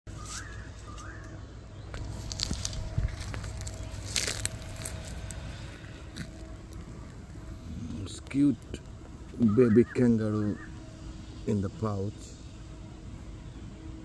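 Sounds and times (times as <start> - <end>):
steady low rumble: 0.6 - 14.0
animal chewing grass: 2.0 - 8.1.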